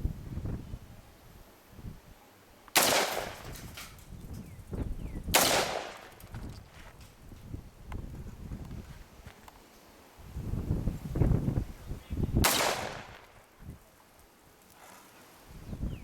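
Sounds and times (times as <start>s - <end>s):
rifle shots: 2.8s - 3.8s, 5.3s - 6.2s, 12.4s - 13.4s.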